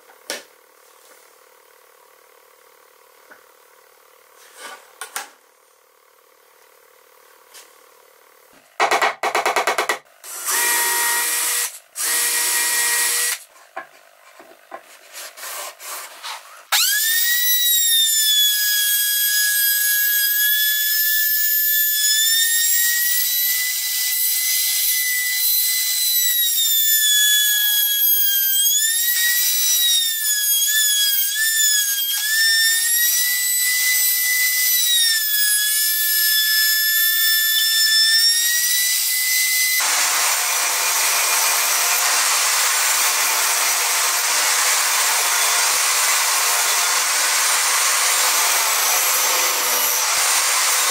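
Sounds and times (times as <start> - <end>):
power tool bursts: 9.4 - 13.4, 16.7 - 50.9
power tool whining in wood: 10.2 - 13.4, 16.4 - 50.9.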